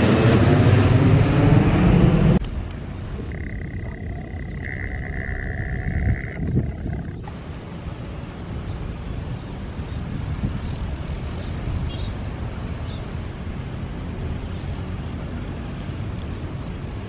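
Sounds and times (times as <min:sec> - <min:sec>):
aircraft engines rumbling: 0:00.0 - 0:17.0.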